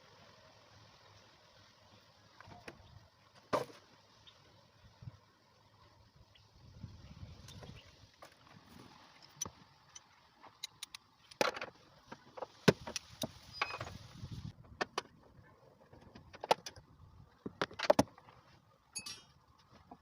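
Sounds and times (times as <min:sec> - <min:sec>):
steady hiss: 0:00.0 - 0:14.6.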